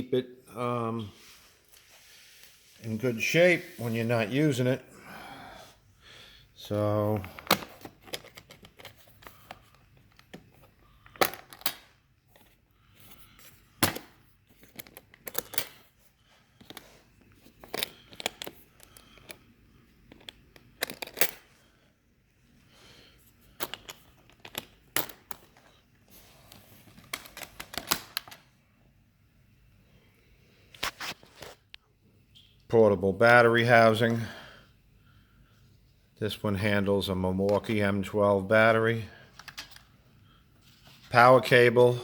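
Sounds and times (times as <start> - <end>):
hard objects clicking and knocking: 7.2 - 12.6, 13.8 - 15.9, 16.6 - 19.4, 20.0 - 21.5, 23.5 - 25.7.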